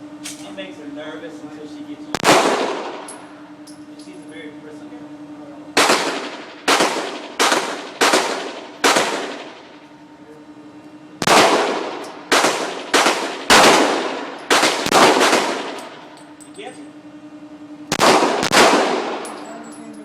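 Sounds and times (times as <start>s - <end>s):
pistol shots echoing: 2.2s - 3.1s, 5.8s - 9.7s, 11.2s - 16.1s, 17.9s - 19.4s.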